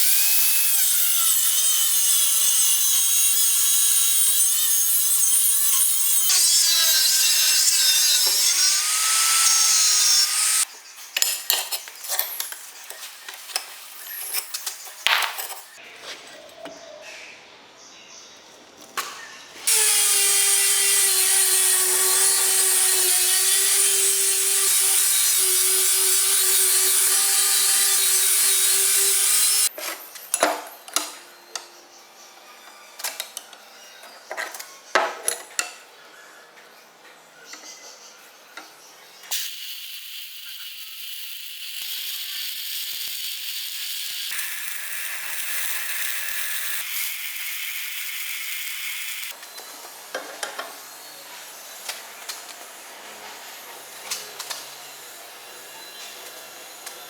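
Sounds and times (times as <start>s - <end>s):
power tool motor running: 6.3s - 10.7s, 19.6s - 29.7s
high hissing grind: 39.3s - 49.4s.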